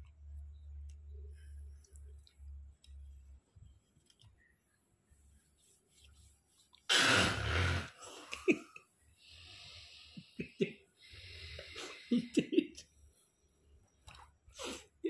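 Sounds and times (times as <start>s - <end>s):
person snoring loudly: 6.9s - 8.0s
breathy hiss: 6.9s - 8.5s, 9.2s - 12.6s.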